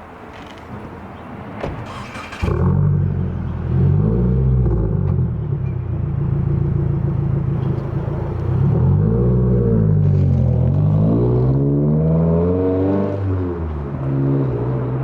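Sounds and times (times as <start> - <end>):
car engine starting and idling: 1.6 - 10.4.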